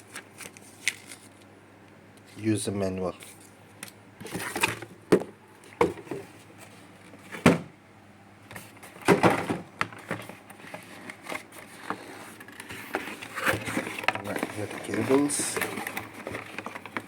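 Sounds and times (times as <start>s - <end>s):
packaging rustle: 0.0s - 1.4s, 9.9s - 17.0s.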